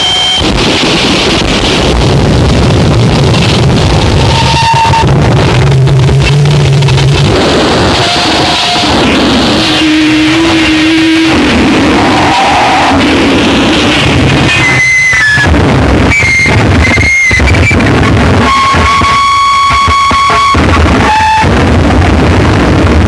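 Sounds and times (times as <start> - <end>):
high steady tone: 0.0 - 0.7, 3.4 - 15.5, 16.1 - 21.7
shorter held tones: 0.0 - 1.1, 3.3 - 22.3
dense distorted noise: 0.0 - 23.0
low droning tones: 0.0 - 23.0.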